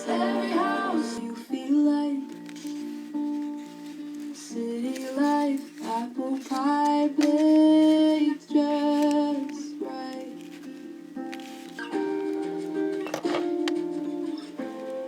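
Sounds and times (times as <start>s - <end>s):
woman singing: 0.0s - 3.1s, 4.0s - 10.6s
guitar: 0.0s - 15.0s.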